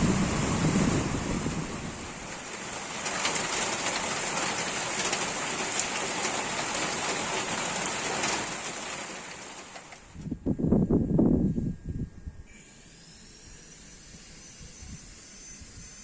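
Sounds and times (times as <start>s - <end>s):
rain falling: 0.0s - 10.2s.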